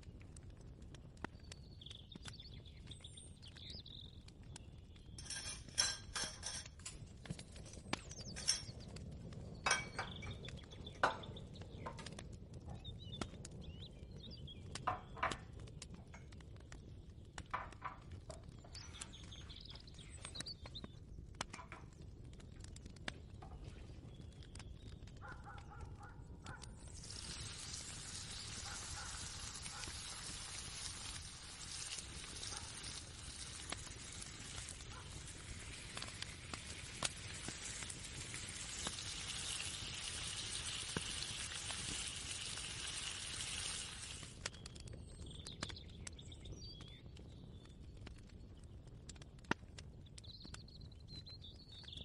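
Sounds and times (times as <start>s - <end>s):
kitchenware clinks: 5.2s - 6.9s, 9.7s - 10.4s
bird chirps: 18.3s - 21.0s.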